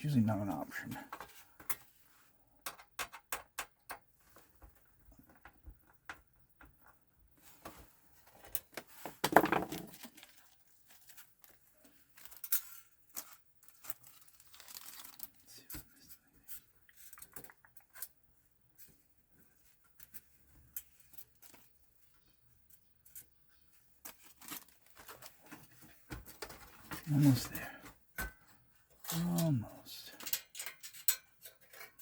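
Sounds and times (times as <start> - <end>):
small plastic clicks and knocks: 2.6 - 7.0.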